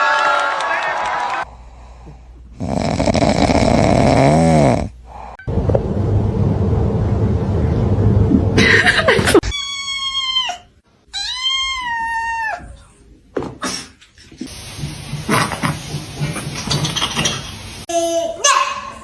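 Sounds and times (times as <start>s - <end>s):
loud unpitched noise: 5.4s - 9.1s
cat meowing: 9.4s - 12.8s.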